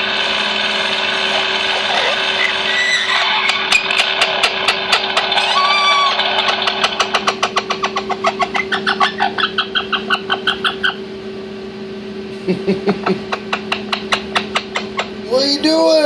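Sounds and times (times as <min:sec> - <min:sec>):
steady low hum: 0:00.0 - 0:16.0
parrot whistling calls: 0:01.7 - 0:04.0, 0:05.4 - 0:06.6, 0:07.3 - 0:11.0.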